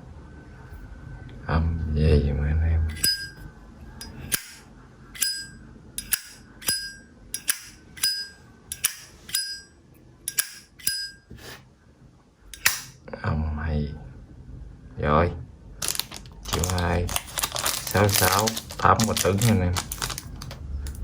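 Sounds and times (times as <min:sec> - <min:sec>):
lighter lid clinking open and shut: 0:05.2 - 0:09.5, 0:10.3 - 0:11.1, 0:12.6 - 0:13.0.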